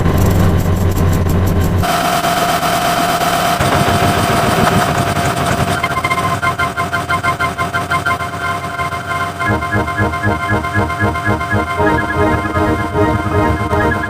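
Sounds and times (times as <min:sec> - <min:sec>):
low engine-like hum: 0:00.0 - 0:01.9
pulsing organ-like tones: 0:05.7 - 0:14.0
steady higher tone: 0:08.0 - 0:14.0.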